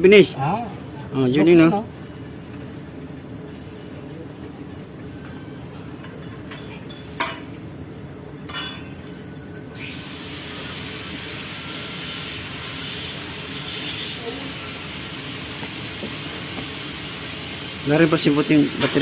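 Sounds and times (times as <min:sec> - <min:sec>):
tools clinking against metal: 0:08.5 - 0:09.2
steady hiss: 0:09.8 - 0:19.0.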